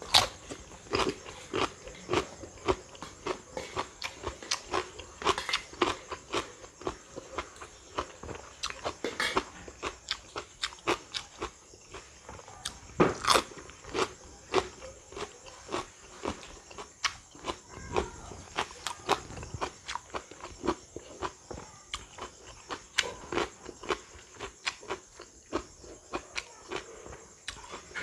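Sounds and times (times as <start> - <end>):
person crunching raw fruit: 0.0 - 9.0, 9.8 - 21.3.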